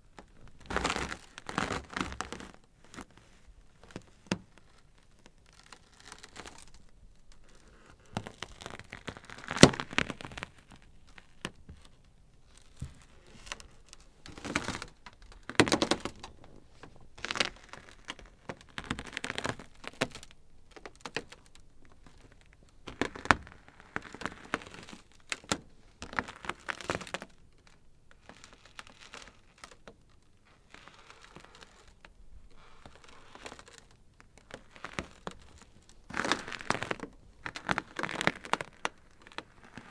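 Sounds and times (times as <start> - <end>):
ice crackling: 34.4 - 39.9.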